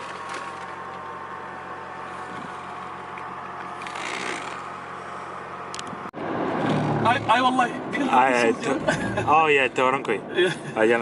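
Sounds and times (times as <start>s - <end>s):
low even hum: 0.0s - 6.1s
road and engine noise in car: 0.0s - 11.0s.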